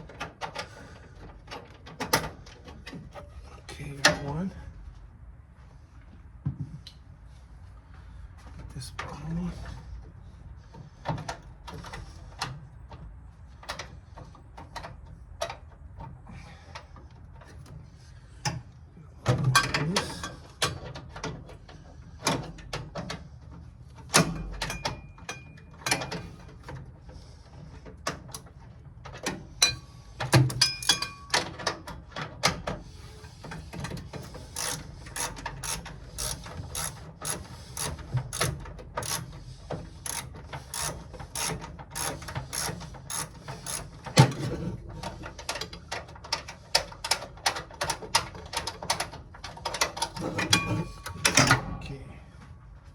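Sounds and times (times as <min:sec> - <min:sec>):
ratchet wrench clicking: 0:34.5 - 0:39.3, 0:40.0 - 0:44.0.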